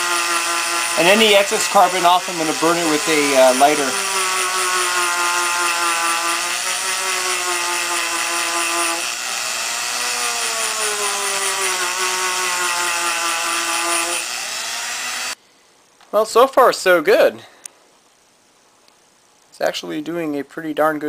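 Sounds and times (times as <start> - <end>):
rotary tool wire brush scrubbing: 0.0 - 9.1.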